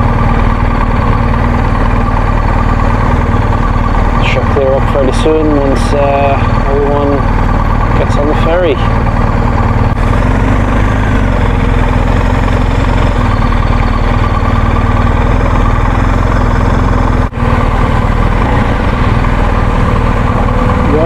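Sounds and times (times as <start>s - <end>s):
motorcycle engine idling: 0.0s - 21.0s.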